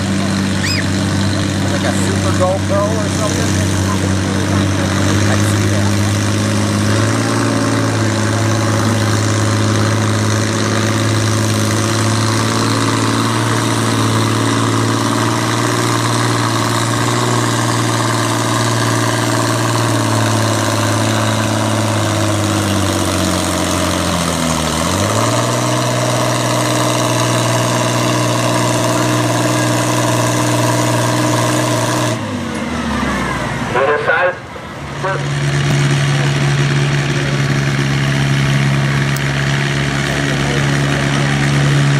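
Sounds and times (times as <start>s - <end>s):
tractor engine running: 0.0s - 41.9s.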